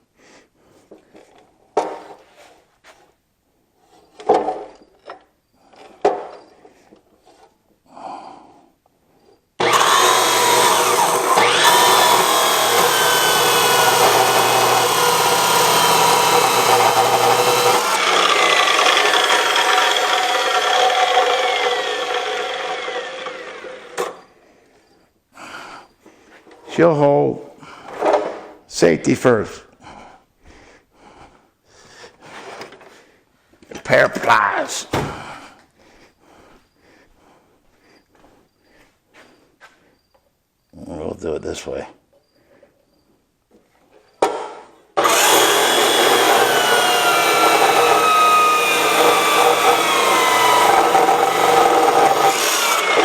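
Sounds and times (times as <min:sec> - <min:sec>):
power saw cutting steel: 0:09.6 - 0:24.3, 0:45.0 - 0:53.0.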